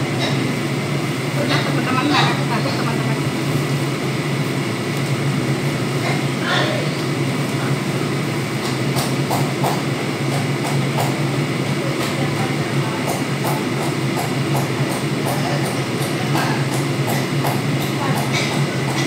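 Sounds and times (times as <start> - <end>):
stovetop low rumble: 0.0 - 15.2.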